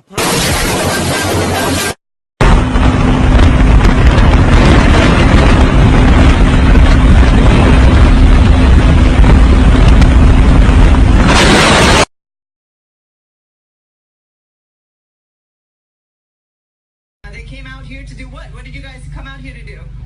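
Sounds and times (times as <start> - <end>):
distorted rushing roar: 0.0 - 12.1.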